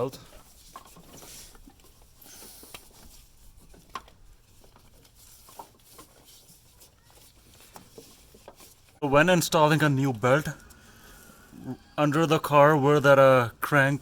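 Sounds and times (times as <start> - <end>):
drive belt being handled: 0.0 - 9.0.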